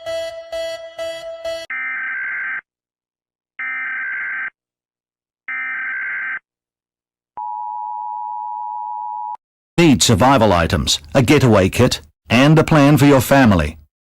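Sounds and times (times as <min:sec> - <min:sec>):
two-tone attention signal: 0:00.0 - 0:01.8.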